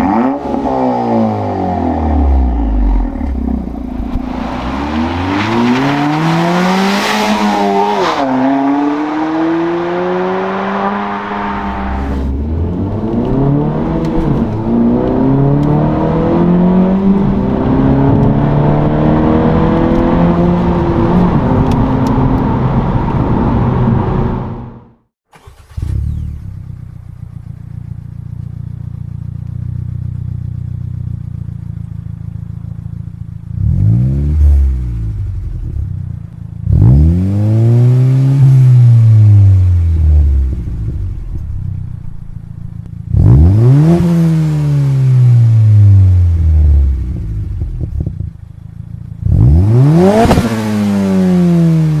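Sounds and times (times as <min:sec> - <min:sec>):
car engine revving: 0:00.0 - 0:27.6, 0:31.4 - 0:52.0
car engine idling: 0:25.4 - 0:33.6, 0:39.6 - 0:43.2, 0:46.1 - 0:49.3.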